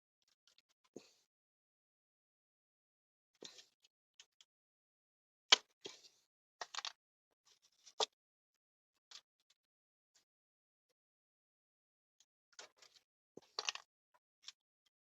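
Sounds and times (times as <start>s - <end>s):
clicks and knocks of handled parts: 6.6s - 8.1s, 12.5s - 14.6s.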